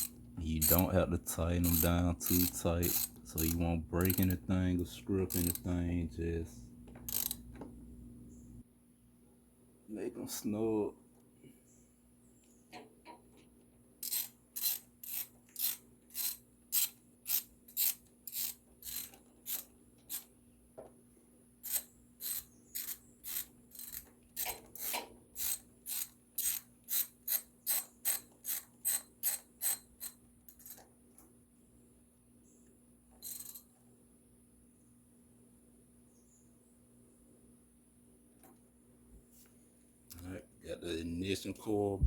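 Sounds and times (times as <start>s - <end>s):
ratchet wrench clicking: 1.6s - 4.4s, 5.3s - 5.7s, 7.1s - 7.4s, 14.0s - 20.3s, 21.6s - 30.8s, 33.2s - 33.7s.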